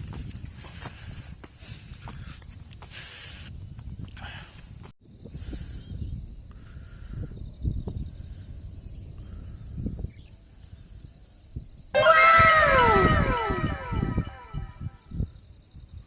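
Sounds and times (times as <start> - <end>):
wind rumbling on microphone: 0.0 - 16.0
loud falling pitched calls: 12.0 - 14.8
high-pitched insect drone: 12.0 - 14.9.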